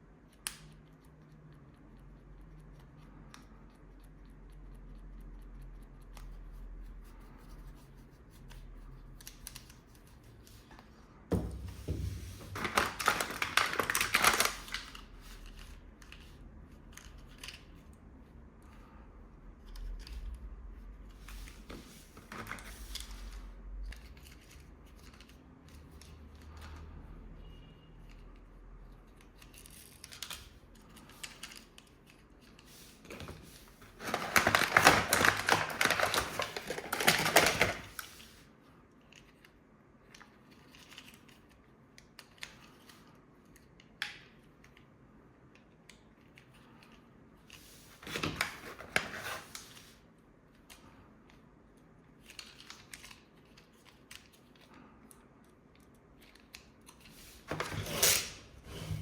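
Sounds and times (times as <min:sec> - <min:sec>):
plastic packaging rustling: 0:11.5 - 0:16.2, 0:32.8 - 0:38.4, 0:47.6 - 0:50.0.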